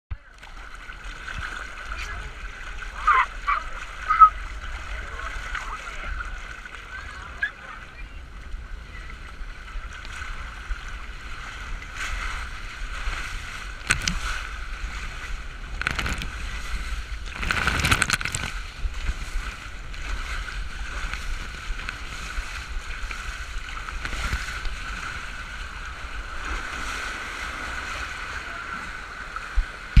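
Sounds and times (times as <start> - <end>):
water splashing: 0.2 - 30.0
water rushing down a slide: 0.5 - 8.2, 10.0 - 30.0
wind rumble on microphone: 1.2 - 30.0.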